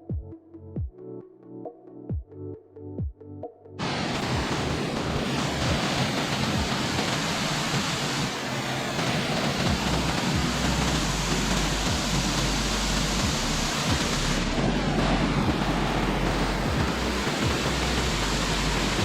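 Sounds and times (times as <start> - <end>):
waterfall rushing water: 3.8 - 19.0.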